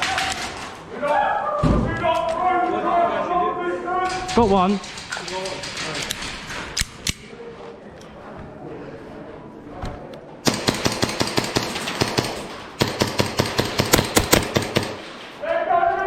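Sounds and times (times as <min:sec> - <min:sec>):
rapid airsoft gunfire: 0:10.4 - 0:15.2.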